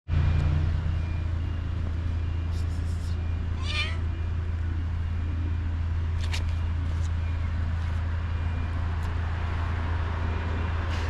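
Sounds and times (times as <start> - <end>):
steady low hum: 0.1 - 11.0
cat meowing: 3.6 - 4.1.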